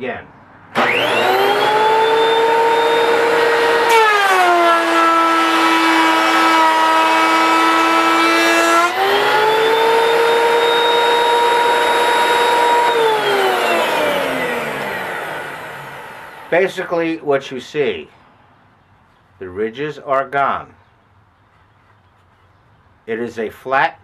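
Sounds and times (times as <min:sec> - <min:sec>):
thickness planer whining: 0:00.8 - 0:16.8.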